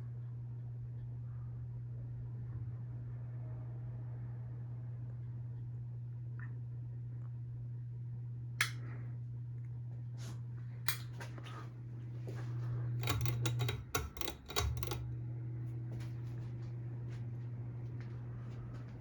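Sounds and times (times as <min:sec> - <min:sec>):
ceiling fan motor hum: 0:00.0 - 0:19.0
sharp clicks: 0:13.0 - 0:15.0.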